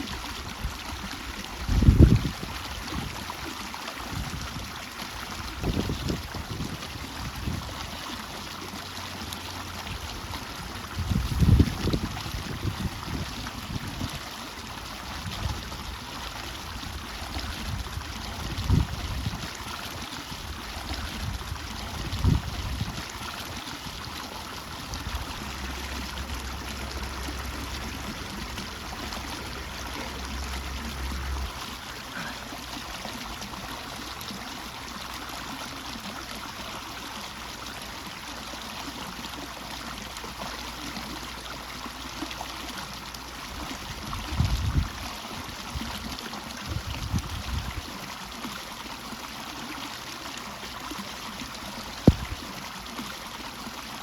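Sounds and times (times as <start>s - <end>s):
water trickling into pond: 0.0s - 54.0s
low bumps: 24.7s - 32.4s
low hum: 24.8s - 32.4s.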